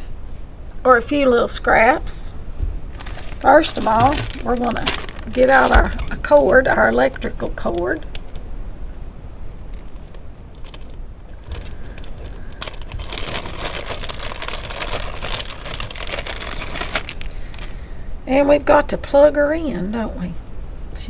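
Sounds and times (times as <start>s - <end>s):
plastic packaging crinkling: 2.9s - 8.5s, 9.4s - 17.9s.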